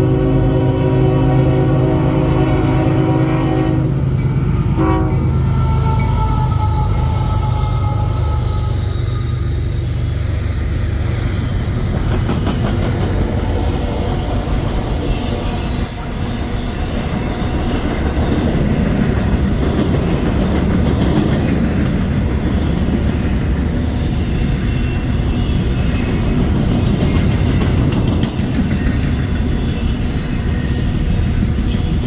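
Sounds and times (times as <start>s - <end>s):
freight train rolling past: 0.0s - 32.0s
wheels clicking over rail joints: 3.8s - 23.8s, 24.5s - 32.0s.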